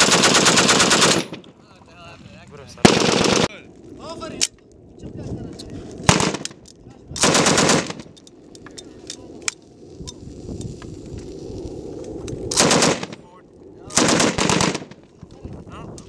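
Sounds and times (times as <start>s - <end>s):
machine gun bursts: 0.0s - 1.4s, 2.8s - 3.5s, 7.2s - 8.0s, 12.5s - 13.1s, 14.0s - 14.9s.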